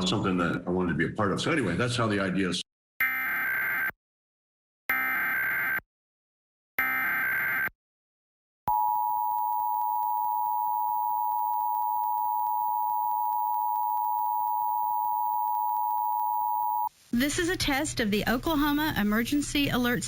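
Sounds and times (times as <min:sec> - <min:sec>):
steady two-tone alert signal: 0:08.7 - 0:16.9.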